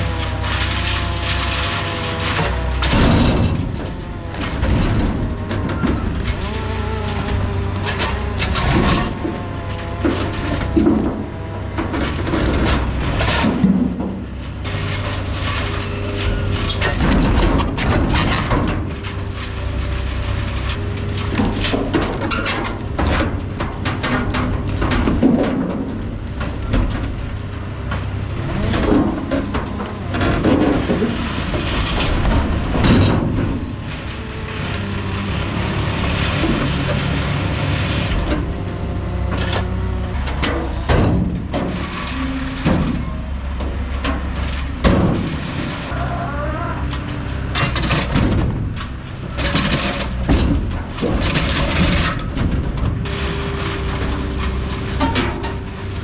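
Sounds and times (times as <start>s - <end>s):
diesel engine under load: 0.0s - 56.0s
hydraulics whining: 0.0s - 56.0s
logs knocking against wood and metal: 36.0s - 56.0s.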